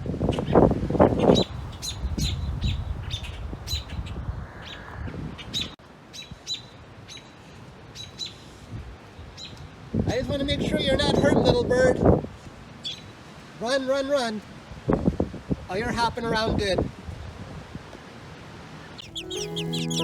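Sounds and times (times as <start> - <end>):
birds chirping sharply: 19.0 - 20.0.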